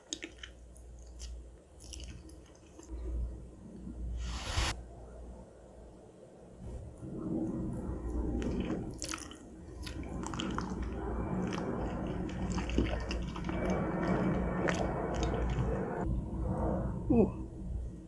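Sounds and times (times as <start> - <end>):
chewing food: 0.0 - 2.9, 8.2 - 16.0.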